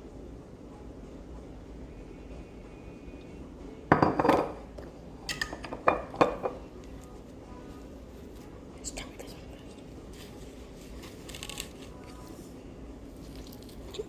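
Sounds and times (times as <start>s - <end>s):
dishes and cutlery clattering: 3.9s - 4.6s, 5.3s - 6.6s.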